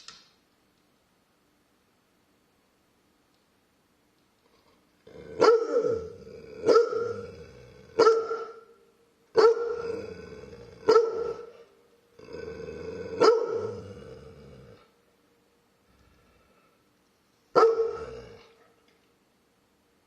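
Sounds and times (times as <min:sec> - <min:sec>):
dog barking: 0:05.4 - 0:07.3, 0:08.0 - 0:08.7, 0:09.4 - 0:09.9, 0:10.8 - 0:11.6, 0:13.2 - 0:13.8, 0:17.6 - 0:18.2.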